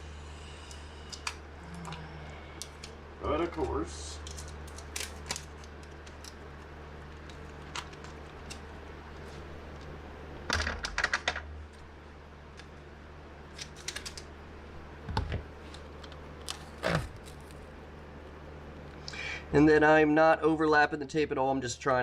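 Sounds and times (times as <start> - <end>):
steady low hum: 0.0 - 22.0
tape clicks and crackles: 0.6 - 11.9, 12.5 - 12.8, 13.4 - 14.4, 15.0 - 17.7.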